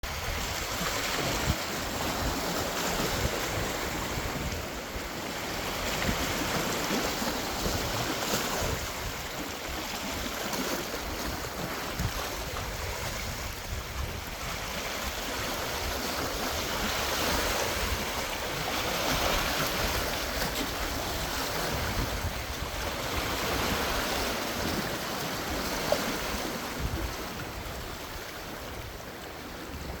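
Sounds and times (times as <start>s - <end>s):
sea waves breaking: 0.0s - 30.0s.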